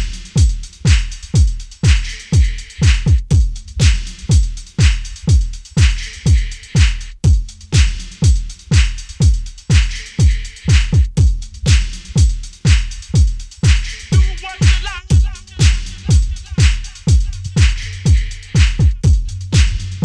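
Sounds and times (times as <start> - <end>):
deep kick drum: 0.0 - 20.0
hissing hi-hat and cymbal hits: 0.0 - 20.0.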